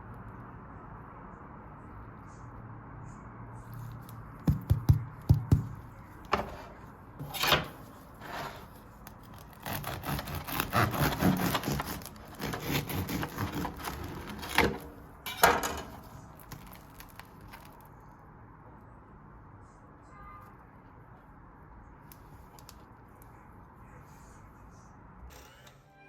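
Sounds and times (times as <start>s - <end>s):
bread knife sawing crusty loaf: 8.1s - 14.8s
bread crust crackling: 8.1s - 15.2s, 15.9s - 18.2s.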